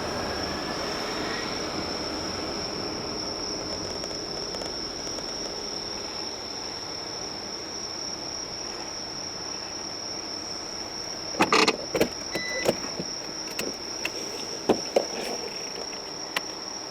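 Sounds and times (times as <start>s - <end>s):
low car rumble: 0.0s - 16.9s
insects chirring: 0.9s - 16.9s
sharp clicks and knocks: 11.4s - 16.6s.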